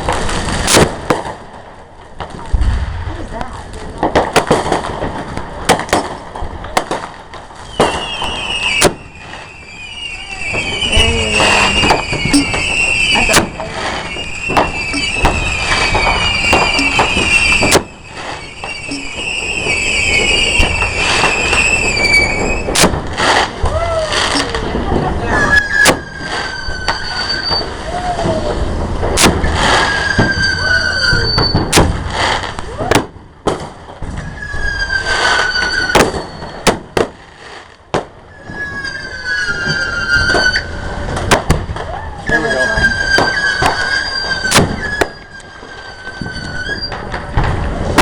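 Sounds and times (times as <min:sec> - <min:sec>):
firework bangs: 0:00.0 - 0:48.0
high wavering firework whistle: 0:07.6 - 0:33.2, 0:34.1 - 0:37.0, 0:38.3 - 0:48.0.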